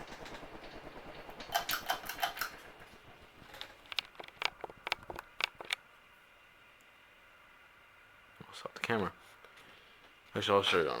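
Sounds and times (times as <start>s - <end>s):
light clicks and rattles: 0.0s - 5.8s
ceiling fan whirring: 0.0s - 11.0s.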